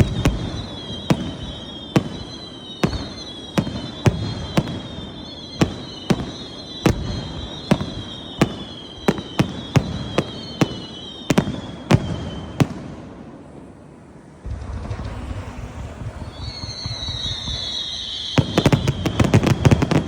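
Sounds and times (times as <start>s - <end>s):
high whistle: 0.0s - 12.6s, 14.2s - 20.0s
fireworks bursting: 0.0s - 20.0s.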